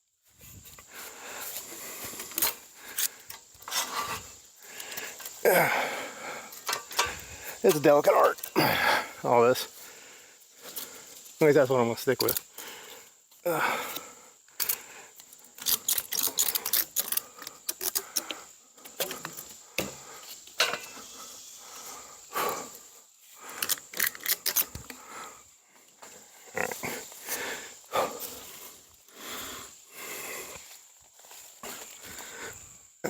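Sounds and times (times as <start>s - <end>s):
heavy breathing: 0.8s - 3.3s, 4.1s - 7.7s, 8.5s - 11.2s, 12.5s - 19.0s, 19.6s - 24.0s, 24.6s - 32.8s.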